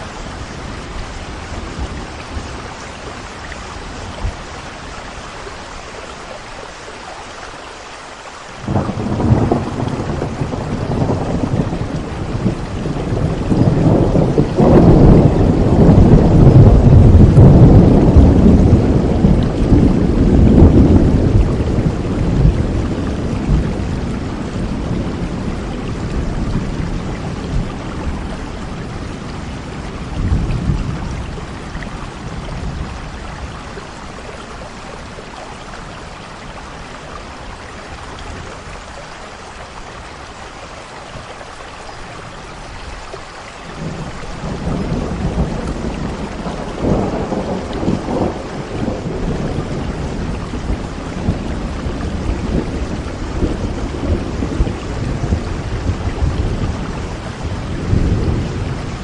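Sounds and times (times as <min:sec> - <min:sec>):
steady rain: 0:00.0 - 0:59.0
rolling thunder: 0:08.6 - 0:35.2, 0:43.7 - 0:59.0.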